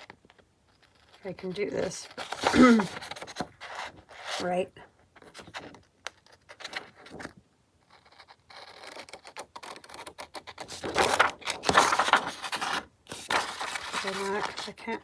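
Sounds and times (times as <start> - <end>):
paper rustling: 0.0 - 7.4, 8.0 - 15.0
scissors snipping paper: 8.5 - 15.0.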